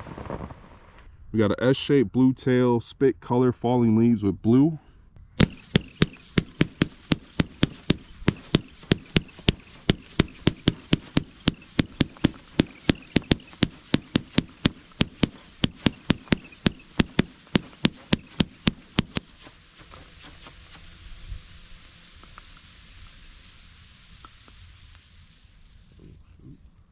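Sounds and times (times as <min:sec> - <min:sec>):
fireworks cake firing shots: 0:00.0 - 0:01.0, 0:05.4 - 0:21.0.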